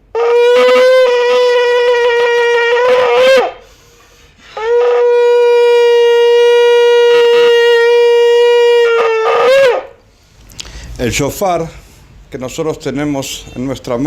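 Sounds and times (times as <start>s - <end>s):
shofar blasts: 0.0s - 10.0s.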